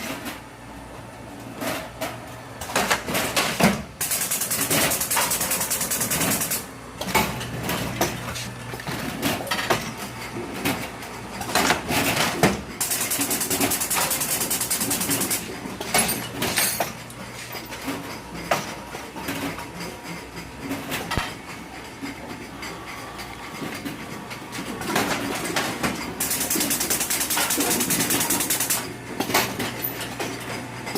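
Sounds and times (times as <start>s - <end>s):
packing machine clicks and knocks: 1.6s - 8.2s, 11.4s - 17.0s, 24.8s - 30.9s.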